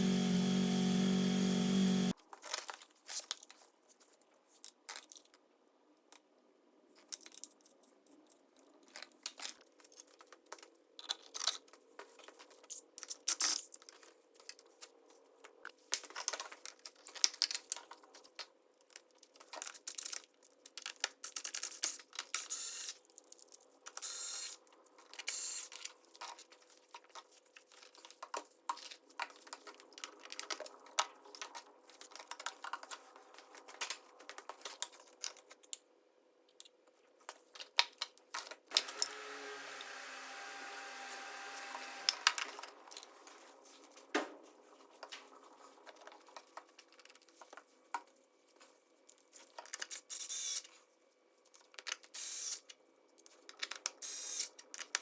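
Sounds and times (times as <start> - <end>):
crinkling rustles: 42.9 - 49.9.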